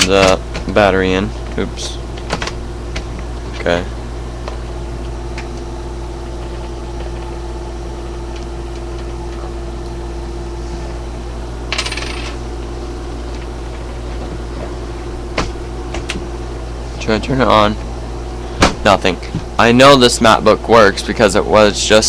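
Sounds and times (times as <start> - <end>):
steady electrical hum: 0.0 - 22.0
coin rattling on hard surface: 11.7 - 12.4.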